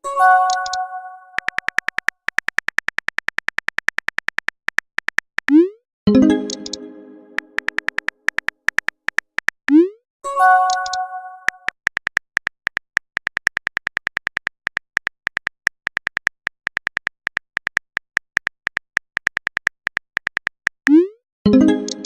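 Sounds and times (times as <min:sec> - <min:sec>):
rapid keyboard typing ticks: 0:00.4 - 0:09.8, 0:10.7 - 0:21.1, 0:21.8 - 0:22.0
multi-note chime: 0:06.1 - 0:07.6, 0:10.3 - 0:11.6.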